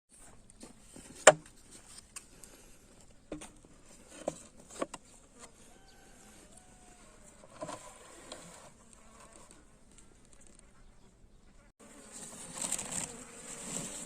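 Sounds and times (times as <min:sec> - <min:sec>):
faint buzzing of honeybees: 0:05.3 - 0:14.0.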